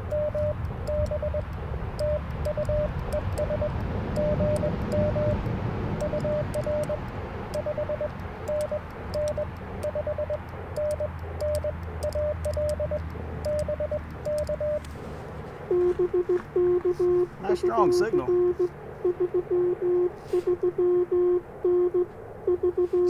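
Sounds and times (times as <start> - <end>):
morse code tone: 0.0 - 14.9, 15.6 - 23.0
radio band noise hiss: 14.8 - 18.7, 20.1 - 20.6.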